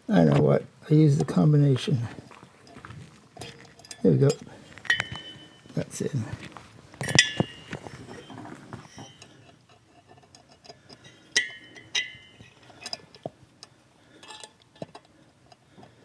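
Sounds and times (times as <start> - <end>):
small metal clicks and clinks: 3.4 - 5.8, 7.0 - 15.7.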